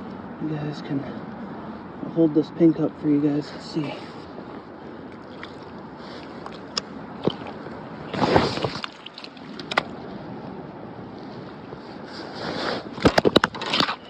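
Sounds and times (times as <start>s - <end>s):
scuffling rustle: 3.5s - 10.2s, 11.1s - 14.0s
river water rushing: 4.7s - 10.0s.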